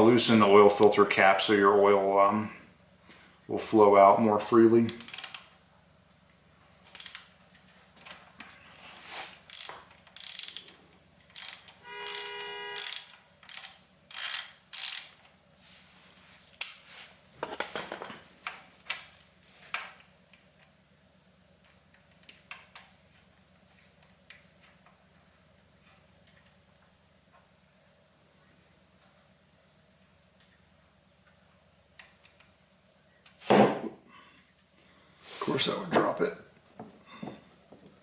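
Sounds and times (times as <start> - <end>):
ratchet wrench clicking: 4.9 - 5.5, 6.8 - 7.3, 9.5 - 15.2.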